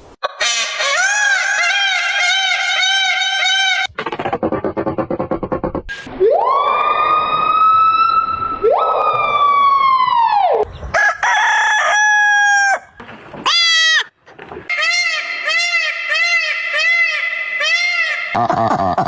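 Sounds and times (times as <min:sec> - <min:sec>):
warbling siren-like sound: 0:06.0 - 0:10.6
rising whistle-like glide: 0:06.2 - 0:10.5
rooster crowing: 0:10.9 - 0:12.9.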